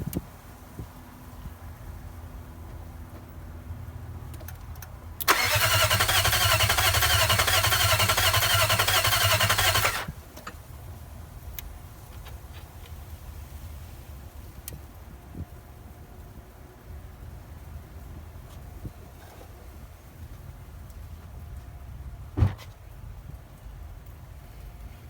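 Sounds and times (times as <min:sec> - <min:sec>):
starter motor cranking engine: 0:05.2 - 0:10.2.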